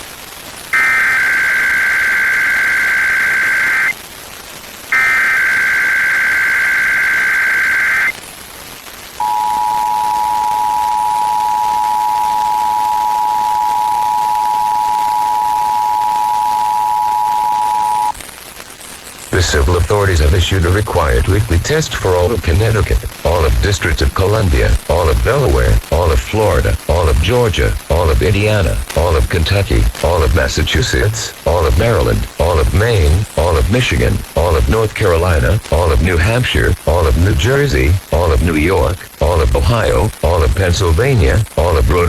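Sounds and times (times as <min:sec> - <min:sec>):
shrill warbling data screech: 0:00.8 - 0:03.9, 0:05.0 - 0:08.1
two-tone attention signal: 0:05.0 - 0:08.1, 0:09.2 - 0:18.2.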